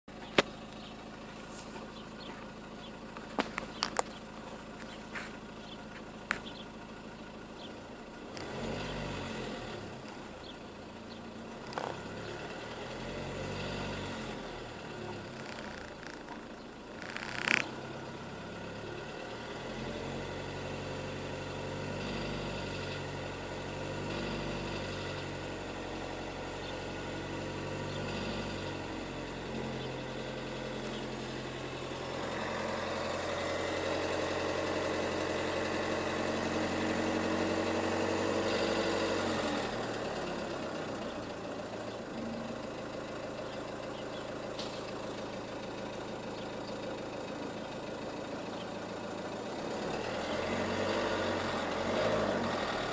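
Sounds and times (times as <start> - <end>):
diesel engine with metallic knock: 0.1 - 52.9.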